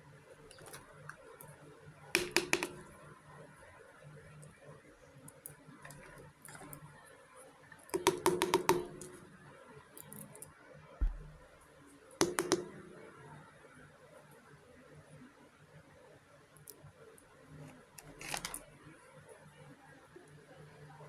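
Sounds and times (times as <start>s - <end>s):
toy kitchenware clicking: 2.2s - 2.9s
dull thump: 11.0s - 11.4s.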